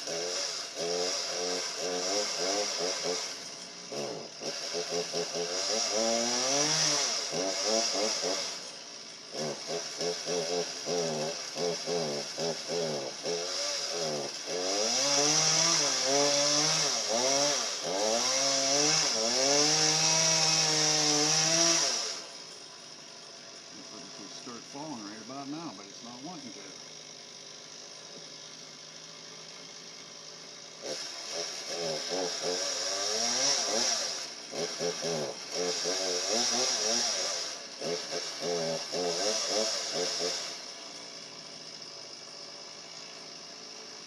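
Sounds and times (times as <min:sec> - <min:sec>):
chainsaw cutting through wood: 0:00.0 - 0:44.0.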